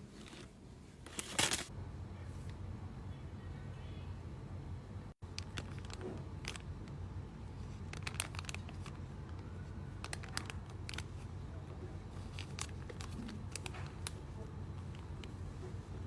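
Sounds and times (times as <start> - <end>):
low steady hum: 0.0 - 16.0
plastic crinkles: 5.2 - 16.0.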